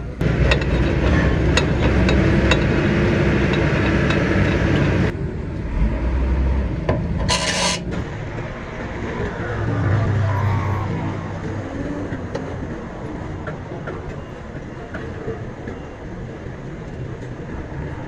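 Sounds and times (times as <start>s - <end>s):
rasping scraping metalwork: 0.2s - 5.1s, 7.2s - 8.0s.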